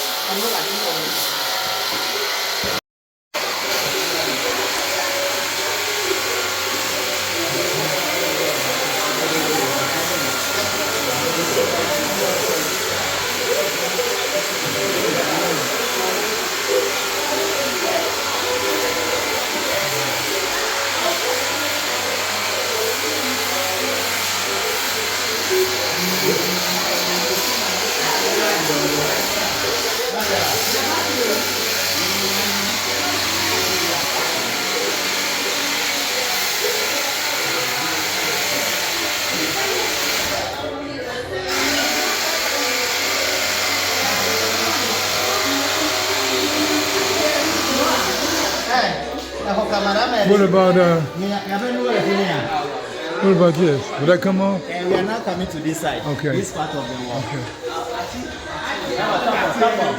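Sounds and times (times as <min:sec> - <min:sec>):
pressure washer spraying: 0:03.4 - 0:40.6, 0:41.5 - 0:48.9
water spray hissing: 0:41.5 - 0:48.8.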